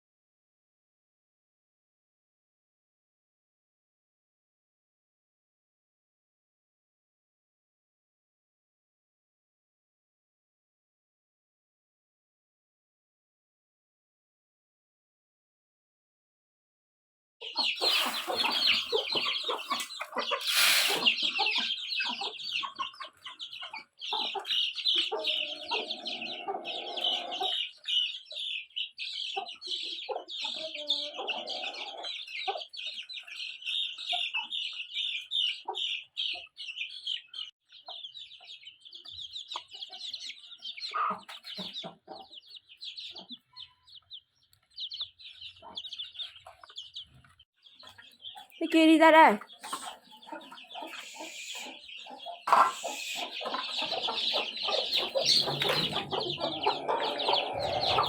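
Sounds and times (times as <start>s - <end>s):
chickens clucking and peeping: 17.4s - 58.0s.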